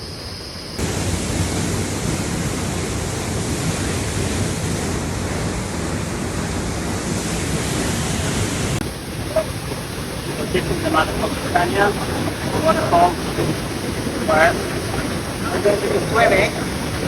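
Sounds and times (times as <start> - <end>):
waterfall roaring: 0.8 - 17.0.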